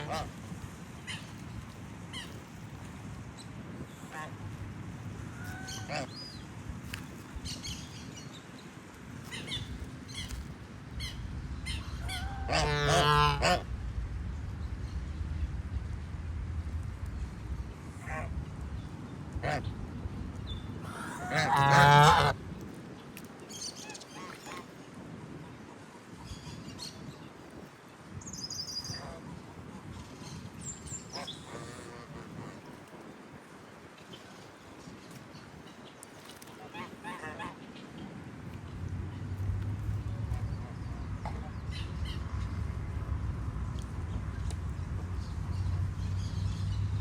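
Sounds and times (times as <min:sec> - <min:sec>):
goose calling: 0:00.0 - 0:00.3, 0:05.3 - 0:06.1, 0:11.0 - 0:13.6, 0:20.8 - 0:22.4, 0:31.2 - 0:32.7
low outdoor rumble: 0:00.0 - 0:22.6, 0:36.6 - 0:47.0
low background rumble: 0:38.4 - 0:47.0.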